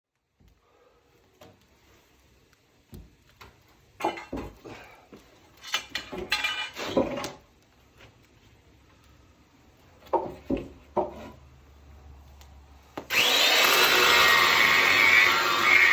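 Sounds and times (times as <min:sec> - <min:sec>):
knocks and clattering: 0:05.6 - 0:07.5.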